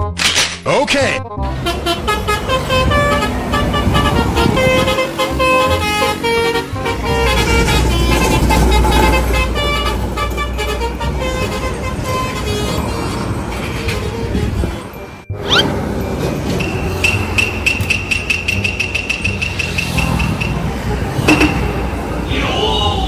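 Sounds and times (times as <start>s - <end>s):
multi-tone bus horn tune: 1.3s - 22.2s
bus engine rumble: 1.4s - 23.0s.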